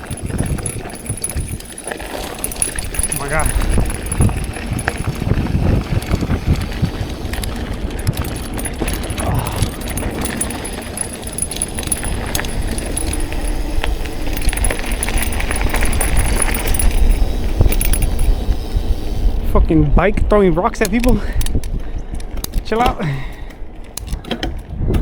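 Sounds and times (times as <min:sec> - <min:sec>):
bike tyres rumbling on rock: 0:00.0 - 0:19.0
bike clicks and rattles: 0:00.0 - 0:19.5, 0:20.2 - 0:25.0.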